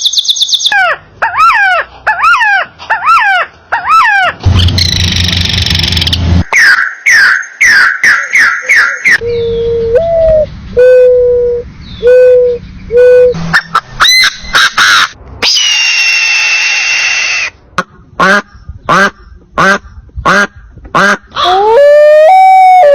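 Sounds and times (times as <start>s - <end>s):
falling animal calls: 0.8s - 17.6s
whistled notes: 8.8s - 13.4s.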